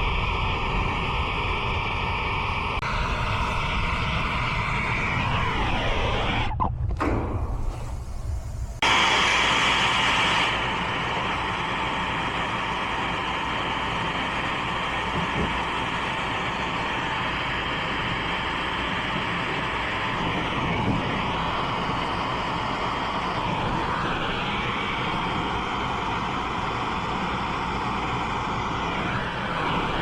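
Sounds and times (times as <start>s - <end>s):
brazing torch roaring hiss: 7.3s - 30.0s.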